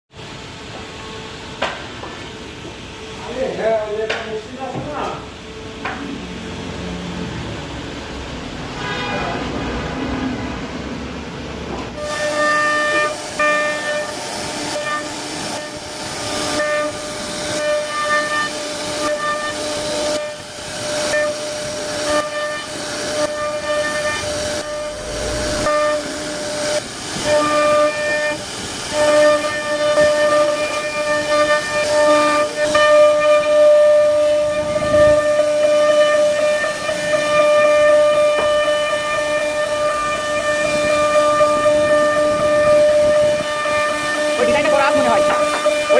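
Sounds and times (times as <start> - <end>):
router spindle whining: 12.0 - 31.0, 39.7 - 45.9
bit carving wood hiss: 12.0 - 45.9.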